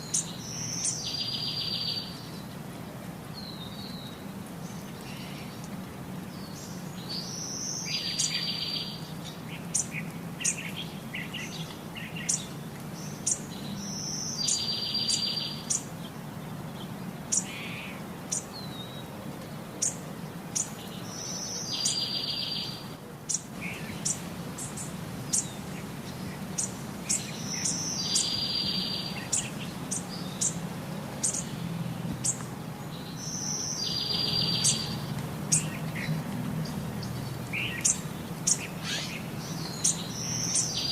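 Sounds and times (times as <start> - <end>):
birds chirping: 0.0 - 40.9
bird call: 26.6 - 30.6, 33.2 - 35.8, 37.6 - 40.9.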